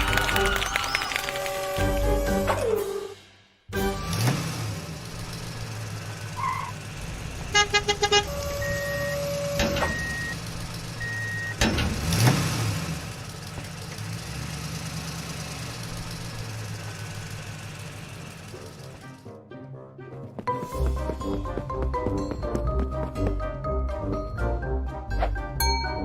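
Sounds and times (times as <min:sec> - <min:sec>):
horn toots: 0:07.4 - 0:09.6.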